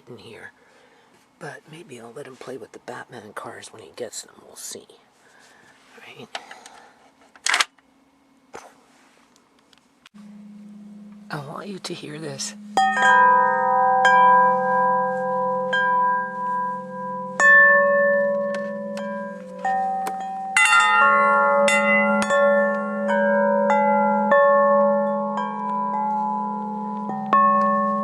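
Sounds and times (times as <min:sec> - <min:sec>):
chimes ringing: 0:10.2 - 0:28.0.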